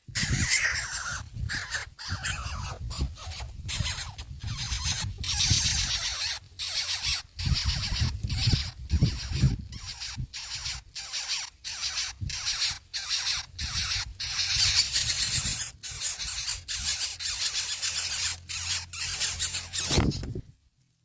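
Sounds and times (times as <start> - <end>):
nestling birds begging squeals: 0.0 - 20.3.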